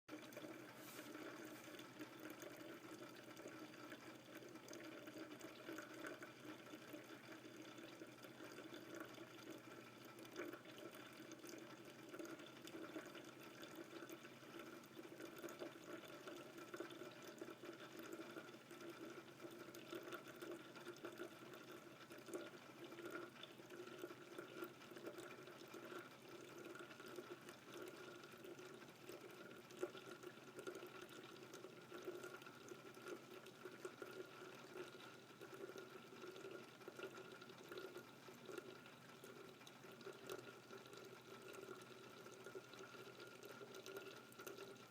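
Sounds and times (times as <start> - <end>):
hot water trickling into coffee pot: 0.1 - 44.9.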